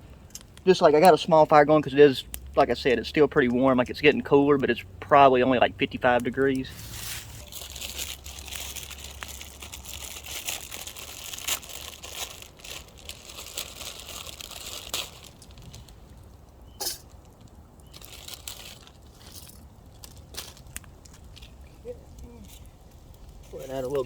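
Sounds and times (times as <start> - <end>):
plastic packets crinkling and tearing: 6.5 - 16.5, 17.1 - 24.0.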